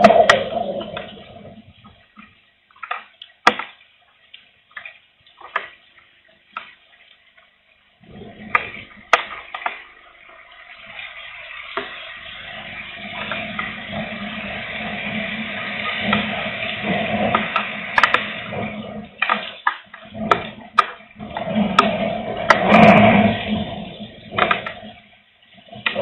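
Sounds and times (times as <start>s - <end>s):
wind gusts: 0.0s - 2.0s, 12.4s - 26.0s
raindrops ticking: 0.0s - 26.0s.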